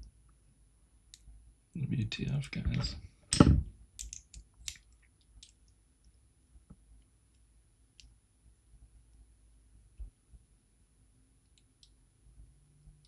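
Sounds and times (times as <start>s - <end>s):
clicks and taps of lock parts: 2.7s - 5.6s
loud thump: 3.4s - 3.7s.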